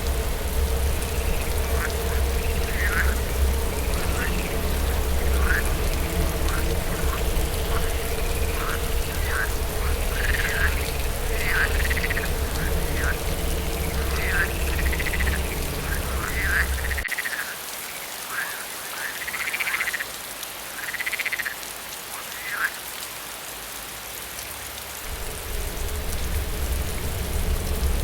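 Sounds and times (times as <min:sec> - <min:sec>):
low wind rumble: 0:00.0 - 0:17.1, 0:25.0 - 0:28.0
frogs croaking: 0:00.0 - 0:23.0, 0:25.0 - 0:28.0
rain hiss: 0:00.0 - 0:28.0.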